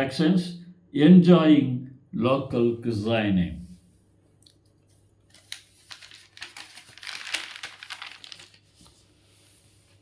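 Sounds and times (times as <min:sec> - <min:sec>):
crinkling and crackling: 0:04.4 - 0:09.1.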